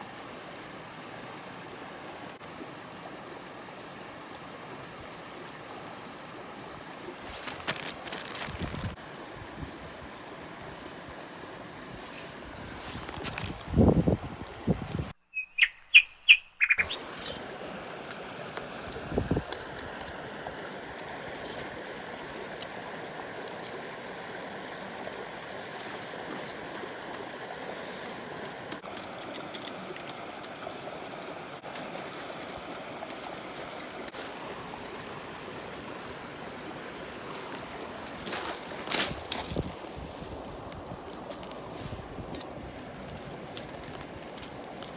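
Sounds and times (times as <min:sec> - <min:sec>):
river water running: 0:00.0 - 0:44.9
bird chirping: 0:15.2 - 0:17.0.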